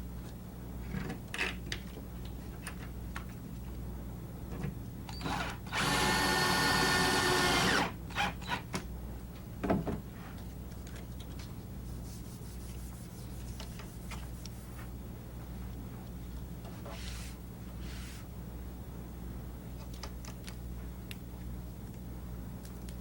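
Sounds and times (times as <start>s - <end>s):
power drill whining: 5.1s - 8.6s.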